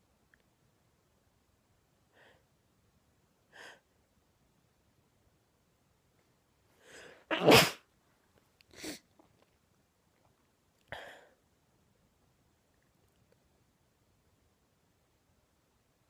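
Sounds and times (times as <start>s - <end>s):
breathing: 2.1s - 2.5s, 6.8s - 7.3s, 10.9s - 11.4s
woman sneezing: 7.3s - 7.8s.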